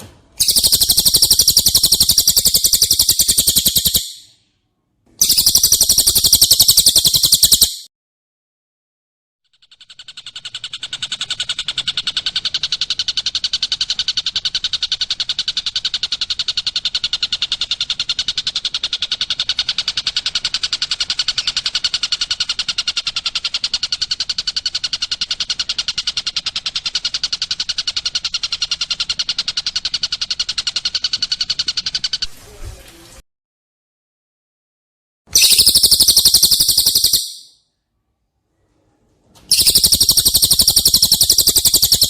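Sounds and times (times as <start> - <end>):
bird trilling: 0.4 - 4.3, 5.2 - 7.9, 35.3 - 37.6, 39.5 - 42.0.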